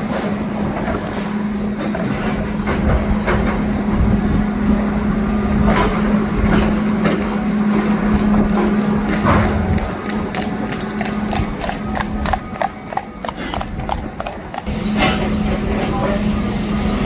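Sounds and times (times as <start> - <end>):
excavator diesel engine humming: 0.0 - 14.8
rubble knocking and cracking: 8.0 - 14.7.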